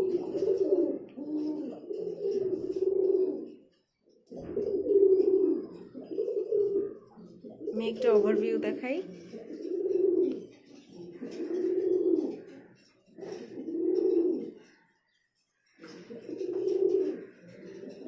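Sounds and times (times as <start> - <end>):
pigeons cooing: 0.0 - 18.0.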